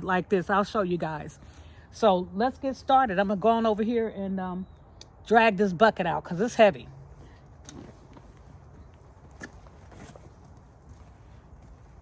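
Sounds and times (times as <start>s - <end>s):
faint footsteps: 7.1s - 12.0s.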